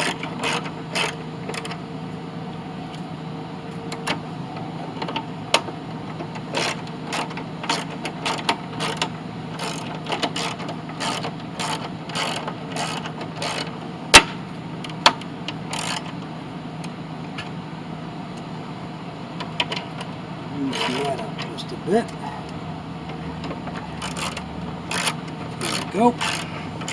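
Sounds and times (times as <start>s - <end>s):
steady low hum: 0.0s - 26.9s
sharp metallic clack: 9.7s - 14.4s
socket ratchet clicking: 24.0s - 26.9s.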